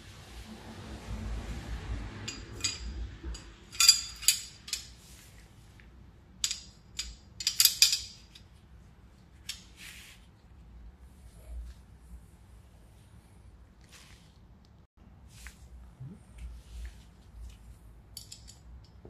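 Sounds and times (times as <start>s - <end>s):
metal tools clinking and scraping: 2.3s - 5.2s, 6.4s - 8.6s, 18.2s - 19.0s.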